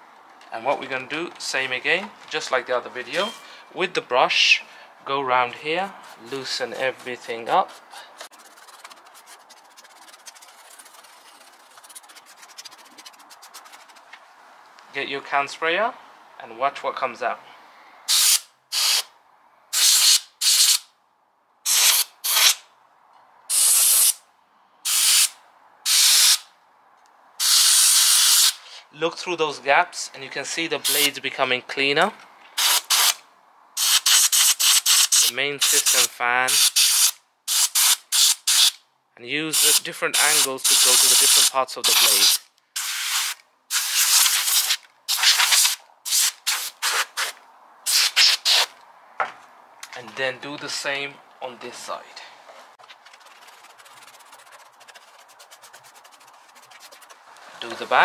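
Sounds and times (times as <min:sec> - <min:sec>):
compressed air duster hissing: 0:18.1 - 0:19.1, 0:21.7 - 0:22.6, 0:25.9 - 0:26.4, 0:27.4 - 0:28.8, 0:30.9 - 0:31.1, 0:32.6 - 0:33.2, 0:33.8 - 0:36.0, 0:39.6 - 0:48.7.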